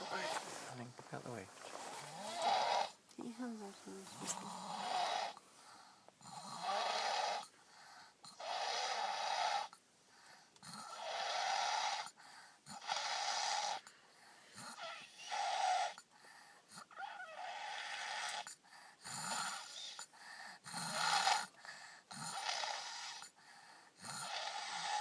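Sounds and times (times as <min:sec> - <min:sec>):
loud rasping snoring: 0:00.0 - 0:00.4, 0:02.0 - 0:03.0, 0:04.2 - 0:05.4, 0:06.2 - 0:07.5, 0:08.3 - 0:09.8, 0:10.6 - 0:13.9, 0:14.6 - 0:16.1, 0:16.7 - 0:23.4, 0:24.0 - 0:25.0
quiet breaths: 0:00.0 - 0:25.0.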